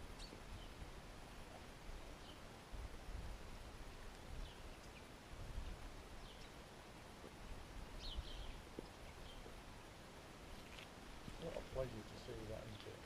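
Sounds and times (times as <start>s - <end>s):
small birds chirping: 0.0s - 2.7s, 3.9s - 13.0s.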